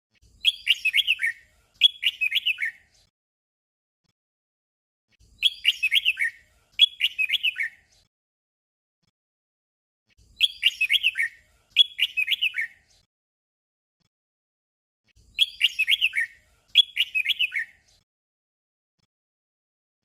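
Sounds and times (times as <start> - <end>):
bird singing whistled notes: 0.3 - 2.9, 5.3 - 7.9, 10.2 - 12.9, 15.2 - 17.9.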